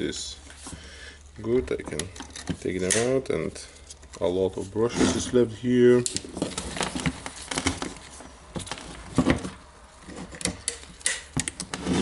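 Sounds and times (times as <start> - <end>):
small parts clicking and knocking: 10.3 - 11.7.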